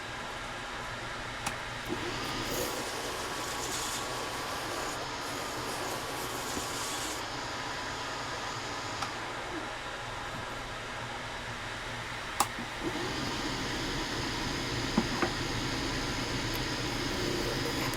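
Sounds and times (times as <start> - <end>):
workshop machine humming: 1.0 - 17.9.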